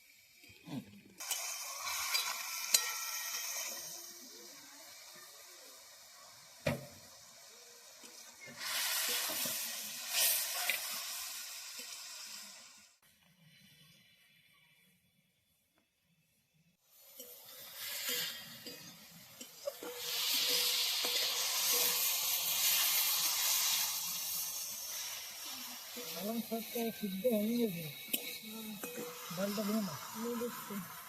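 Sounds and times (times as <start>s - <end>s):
spinach sizzling in a pan: 1.2s - 13.0s, 16.8s - 31.0s.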